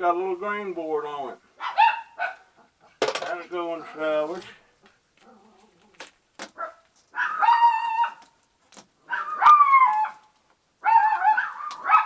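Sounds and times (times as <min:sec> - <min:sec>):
dog barking drawn-out: 0:01.6 - 0:02.5, 0:06.6 - 0:08.2, 0:09.1 - 0:10.2, 0:10.8 - 0:12.0.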